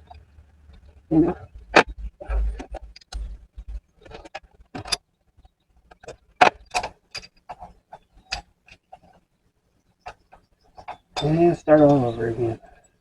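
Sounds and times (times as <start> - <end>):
hand tools clinking on metal: 6.7 - 8.9, 10.1 - 12.5.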